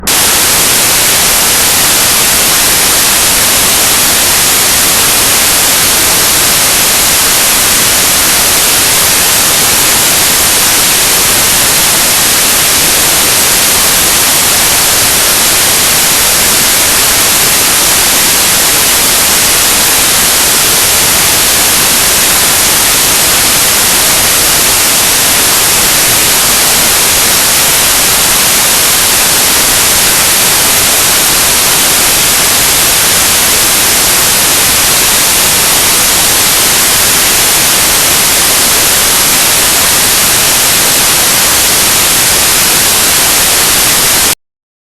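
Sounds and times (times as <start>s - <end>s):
television static hiss: 0.0s - 44.4s.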